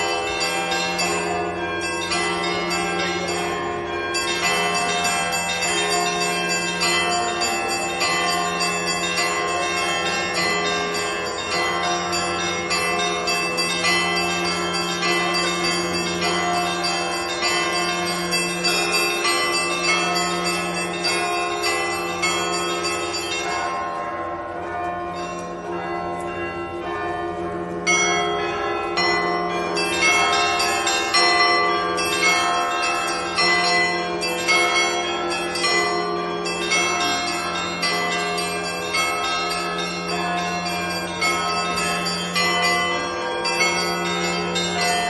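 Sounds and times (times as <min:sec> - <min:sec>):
small bells chiming: 0:00.0 - 0:45.0.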